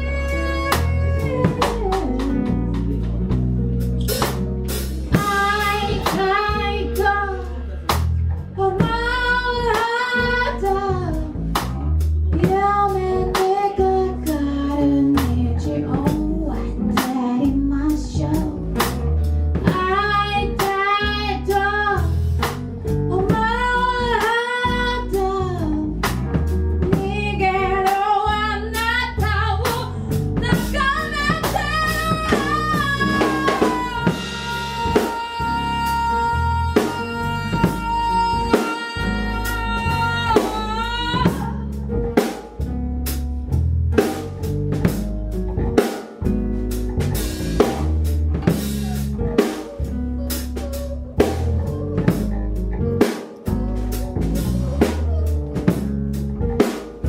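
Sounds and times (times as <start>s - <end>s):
band playing: 0.0s - 57.0s
person singing long notes: 30.5s - 41.6s.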